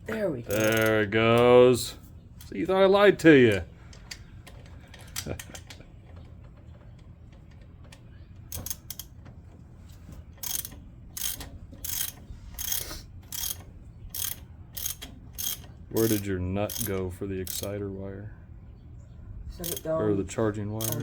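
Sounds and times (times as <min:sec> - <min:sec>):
steady low hum: 0:00.0 - 0:21.0
ratchet wrench clicking: 0:00.5 - 0:01.0, 0:08.5 - 0:09.1, 0:10.4 - 0:17.7, 0:19.6 - 0:19.9, 0:20.8 - 0:21.0.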